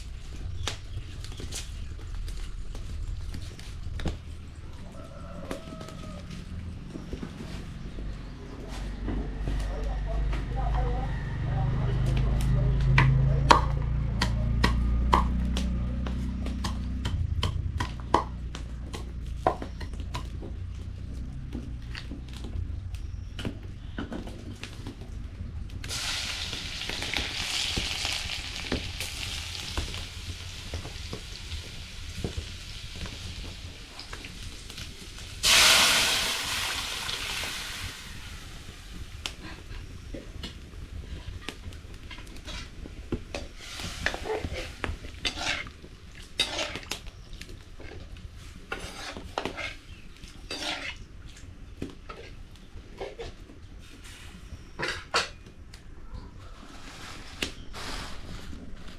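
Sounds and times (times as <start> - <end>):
hot oil sizzling: 25.8 - 39.5, 43.3 - 47.0, 50.5 - 51.0
utensil scraping a pot: 42.3 - 42.8, 43.6 - 47.0, 47.8 - 51.1.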